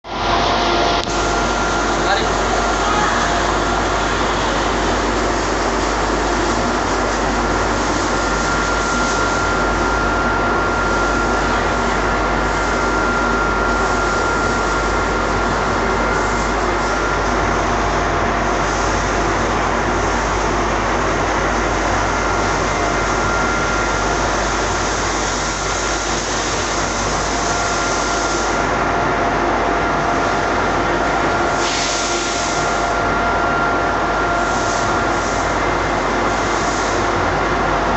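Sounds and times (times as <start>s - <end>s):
high-pitched whine: 0.0s - 37.9s
rush of air and machine noise: 0.0s - 37.9s.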